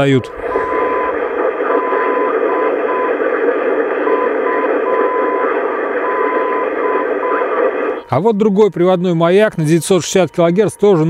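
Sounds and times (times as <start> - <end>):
radio interference from broadcast stations: 0.0 - 8.1
radio band noise hiss: 0.0 - 8.2
morse code beacon tone: 0.4 - 3.2, 4.0 - 7.5.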